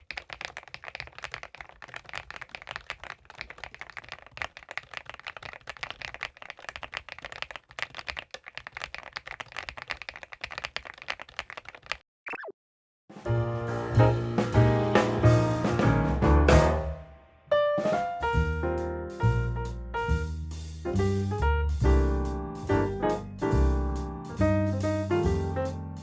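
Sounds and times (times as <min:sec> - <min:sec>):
mechanical keyboard typing: 0:00.0 - 0:12.0.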